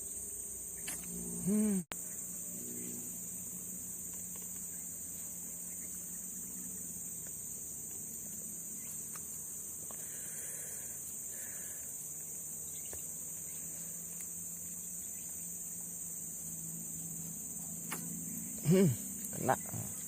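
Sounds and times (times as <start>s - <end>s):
insect chorus: 0.0s - 20.0s.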